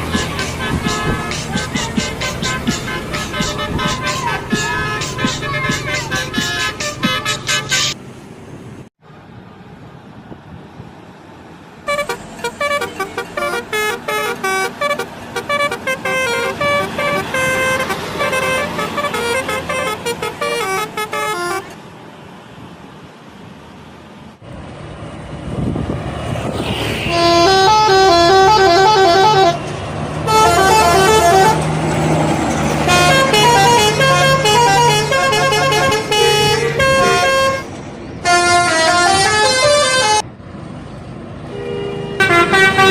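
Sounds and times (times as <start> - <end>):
bus engine humming: 0.0 - 42.9
musical air horn melody: 0.4 - 8.0, 11.9 - 21.7, 27.0 - 29.6, 30.2 - 31.7, 32.8 - 40.2, 41.5 - 42.9.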